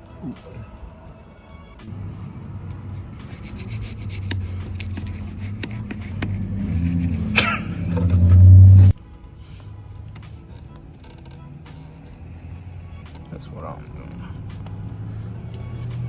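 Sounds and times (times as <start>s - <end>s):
rubbing and knocking on microphone: 3.0s - 8.2s.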